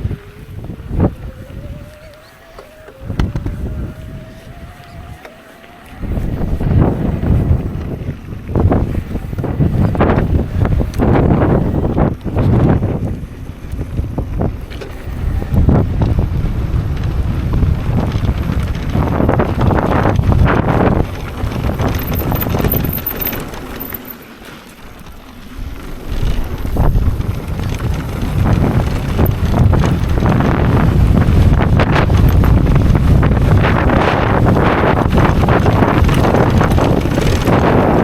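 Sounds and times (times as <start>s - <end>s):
gusting wind on microphone: 0.0s - 38.0s.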